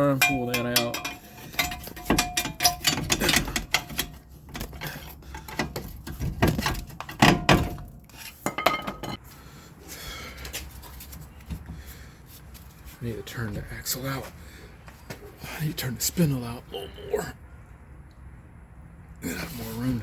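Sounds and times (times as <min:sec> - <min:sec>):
hand tools clanking against metal: 0:00.0 - 0:09.2.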